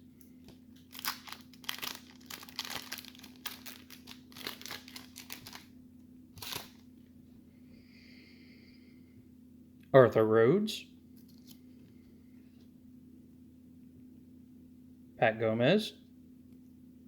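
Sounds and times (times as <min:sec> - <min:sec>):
wrapper crinkling and tearing: 0:00.4 - 0:05.7, 0:06.4 - 0:06.8.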